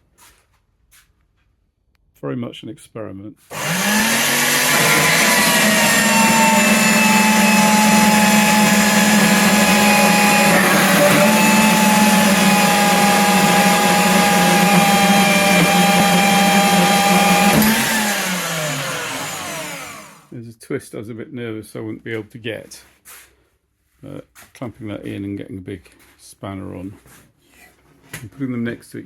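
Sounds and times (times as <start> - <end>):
angle grinder on steel: 3.5 - 20.3.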